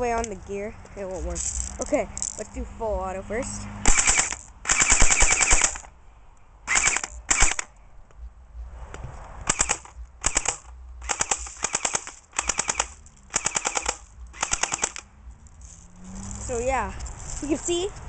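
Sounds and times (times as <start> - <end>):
airsoft pistol rapid shots: 3.8 - 5.9, 6.7 - 7.7, 9.5 - 15.0.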